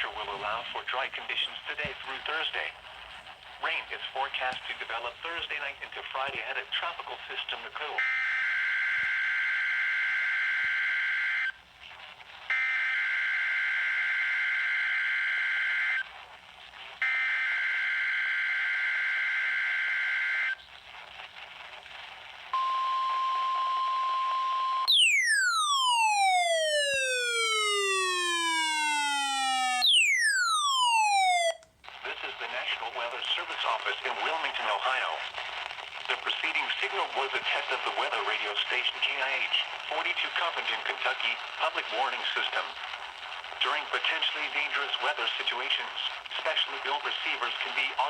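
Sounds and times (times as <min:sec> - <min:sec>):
steady tone: 0:22.6 - 0:31.6.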